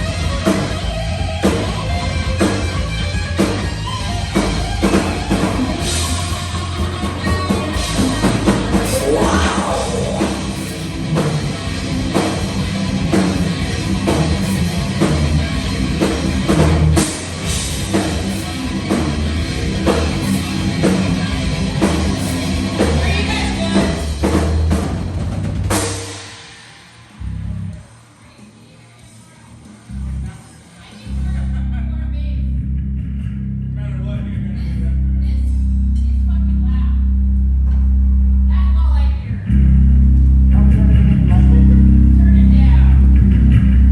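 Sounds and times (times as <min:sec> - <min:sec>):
heavy metal band playing live: 0:00.0 - 0:28.1.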